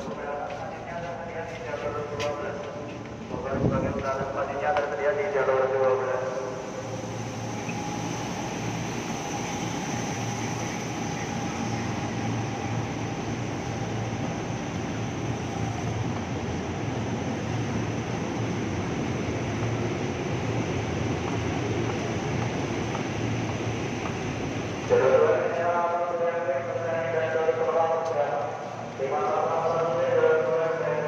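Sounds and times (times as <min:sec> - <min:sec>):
electric train rumbling: 0:00.0 - 0:31.0
faint train whine: 0:00.0 - 0:31.0.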